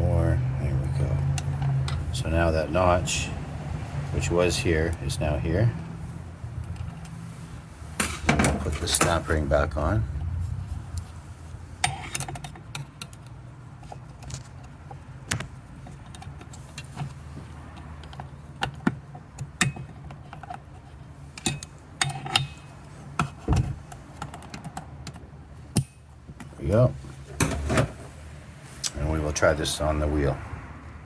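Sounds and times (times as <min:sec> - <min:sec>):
small metallic clicks and taps: 0:11.8 - 0:26.5.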